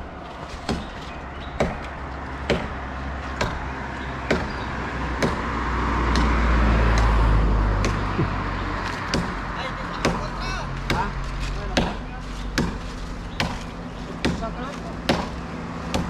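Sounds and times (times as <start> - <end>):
sharp striking blows: 10.0 - 16.0.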